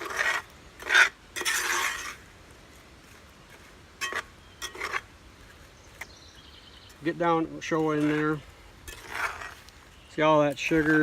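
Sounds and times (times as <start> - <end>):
utensil scraping metal pan: 0.0 - 2.2, 4.0 - 5.1, 7.9 - 9.6.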